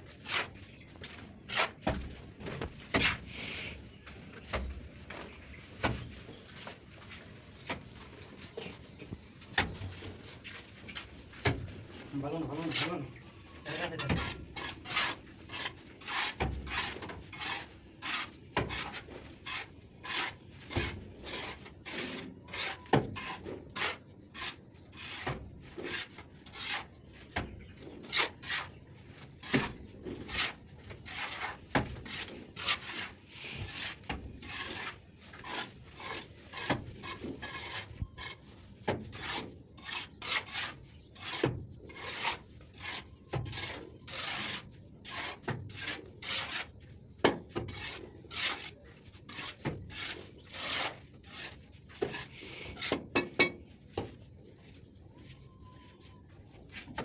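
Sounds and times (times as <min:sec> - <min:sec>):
plastering tool scraping wall: 0:13.6 - 0:54.1.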